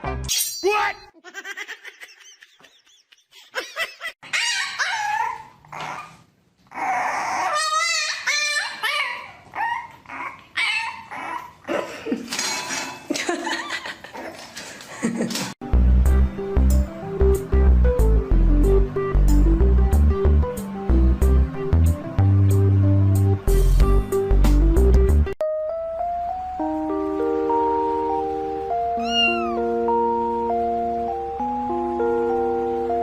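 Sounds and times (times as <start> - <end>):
dog whining and yipping: 4.2 - 11.6, 29.0 - 29.6.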